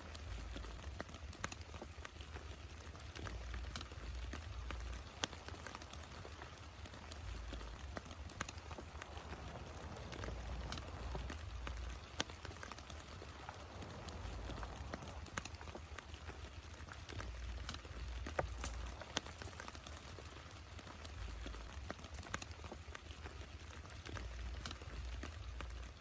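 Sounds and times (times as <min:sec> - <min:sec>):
rain hiss: 0:00.0 - 0:26.0
raindrops tapping: 0:00.0 - 0:26.0
low rumble: 0:07.2 - 0:16.3.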